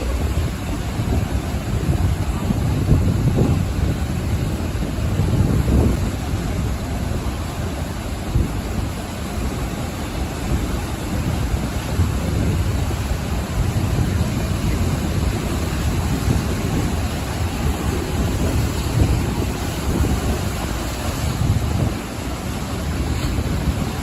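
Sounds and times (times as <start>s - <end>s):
ocean waves breaking on shore: 0.0s - 24.0s.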